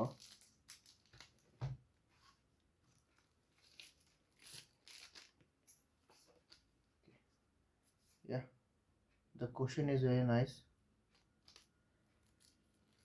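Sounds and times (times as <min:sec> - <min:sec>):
packaging crinkling and tearing: 0:00.0 - 0:01.6, 0:02.9 - 0:05.5, 0:11.1 - 0:13.0.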